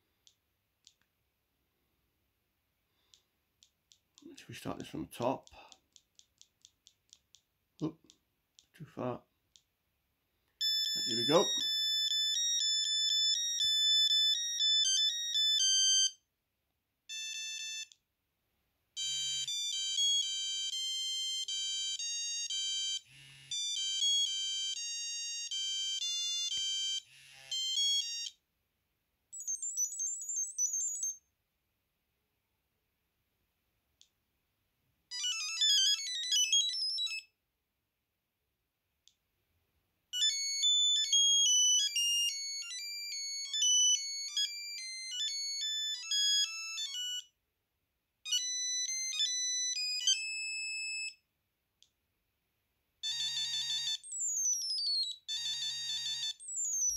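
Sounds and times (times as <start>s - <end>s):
phone ringtone beeping melodies: 10.6s - 16.2s, 17.1s - 18.0s, 19.0s - 28.4s, 29.3s - 31.2s, 35.1s - 37.3s, 40.2s - 47.4s, 48.3s - 51.2s, 53.0s - 56.9s.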